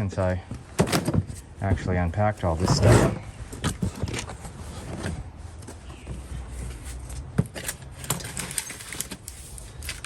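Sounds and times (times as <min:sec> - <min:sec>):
storage bin opening: 0:02.6 - 0:04.3.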